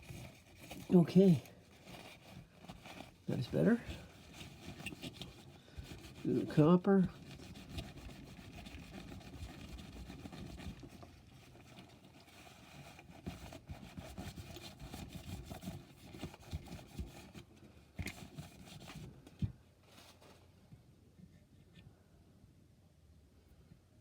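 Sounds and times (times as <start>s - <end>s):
towel rubbing metal: 0.0s - 10.0s.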